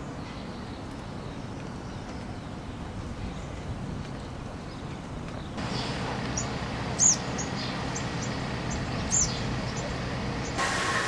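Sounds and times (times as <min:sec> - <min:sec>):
outdoor background noise: 0:00.0 - 0:11.0
small bird chirping: 0:05.5 - 0:10.6.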